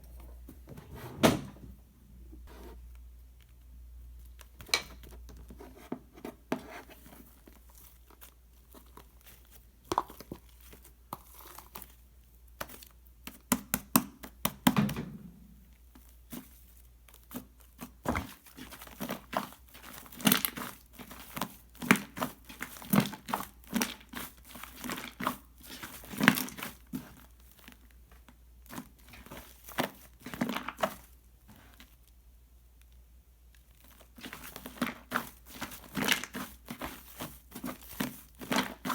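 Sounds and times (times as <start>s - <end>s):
hands squishing slime: 7.1s - 14.9s, 16.3s - 27.8s, 33.6s - 38.9s.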